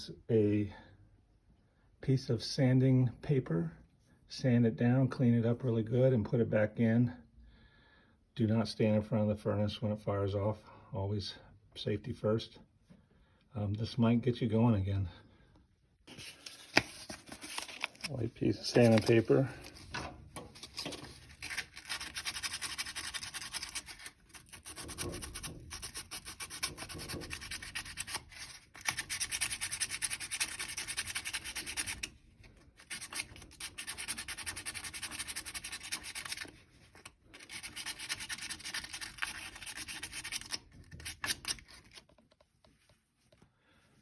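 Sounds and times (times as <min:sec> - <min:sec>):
sandpaper scrubbing metal rod: 0:20.6 - 0:32.2, 0:32.8 - 0:36.6, 0:37.3 - 0:41.5.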